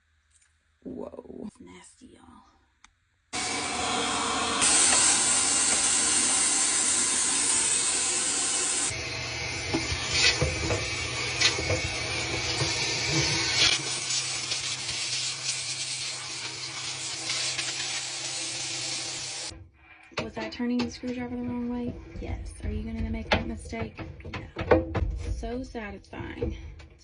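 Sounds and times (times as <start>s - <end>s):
vacuum cleaner running: 3.4s - 19.5s
debris rattling in hose: 4.6s - 19.5s.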